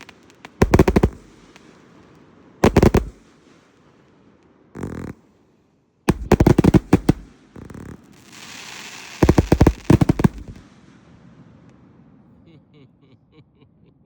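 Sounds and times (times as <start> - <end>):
firework hissing: 0.0 - 1.8, 2.6 - 3.3, 4.8 - 5.2, 6.1 - 10.6
firework bangs: 0.0 - 2.0, 2.6 - 3.6, 4.8 - 5.2, 6.1 - 11.4.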